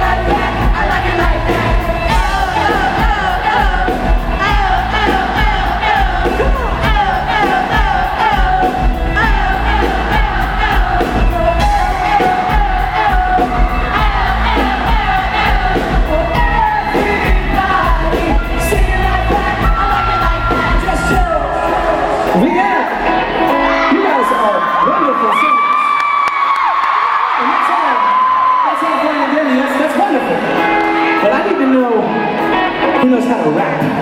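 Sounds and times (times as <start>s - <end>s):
heavy bass: 0.0s - 23.9s
person singing: 0.0s - 24.6s
live pop band playing: 0.0s - 26.5s, 27.6s - 34.0s
crowd noise: 0.0s - 34.0s.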